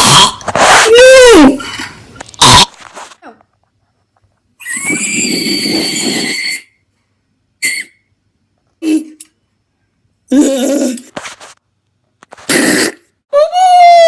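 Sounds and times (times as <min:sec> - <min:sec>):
person making silly noises: 0:00.0 - 0:01.7, 0:08.8 - 0:09.3, 0:10.3 - 0:11.2, 0:12.4 - 0:14.0.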